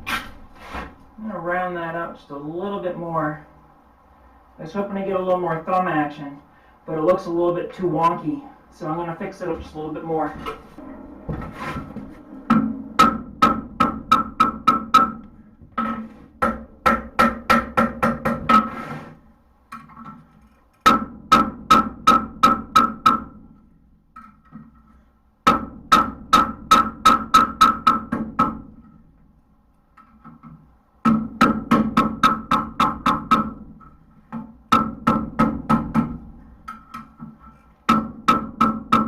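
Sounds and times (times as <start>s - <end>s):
hammer striking steel on anvil: 12.4s - 15.2s.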